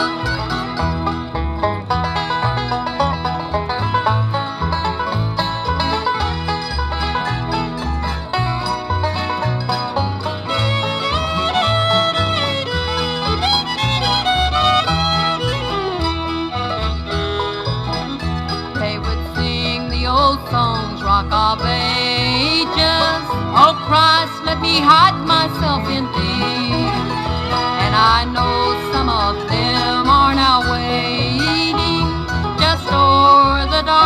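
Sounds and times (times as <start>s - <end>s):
sliding melody line: 0.0s - 34.0s
string band playing country gospel: 0.0s - 34.0s.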